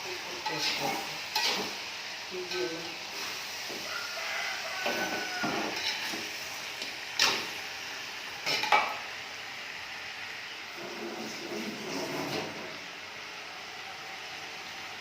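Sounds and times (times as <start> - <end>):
stirring food in a pan: 0.0 - 7.7
frying sizzle: 0.0 - 15.0.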